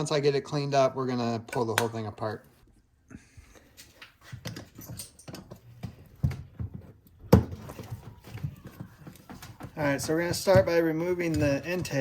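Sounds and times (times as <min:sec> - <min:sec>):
tools clicking and knocking: 0:04.0 - 0:08.0, 0:08.6 - 0:12.0.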